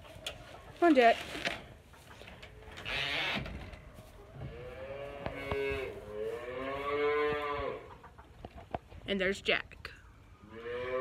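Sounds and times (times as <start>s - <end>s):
cow mooing: 4.4s - 7.8s, 10.5s - 11.0s.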